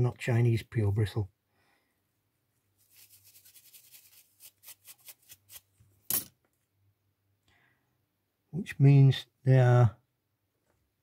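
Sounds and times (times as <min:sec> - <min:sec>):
stiff brush scrubbing: 0:02.8 - 0:05.7.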